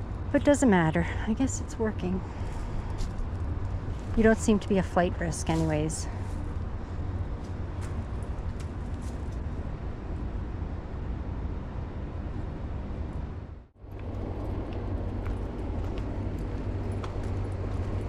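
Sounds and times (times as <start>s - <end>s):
faint noisy haze: 0.0s - 12.7s
low outdoor rumble: 0.0s - 18.0s.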